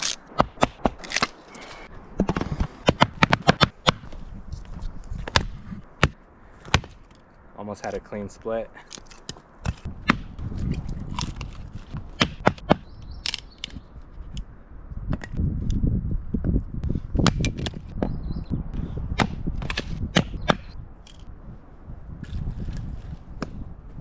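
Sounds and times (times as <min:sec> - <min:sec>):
hatchet chopping wood: 0:05.2 - 0:07.0, 0:12.1 - 0:13.4.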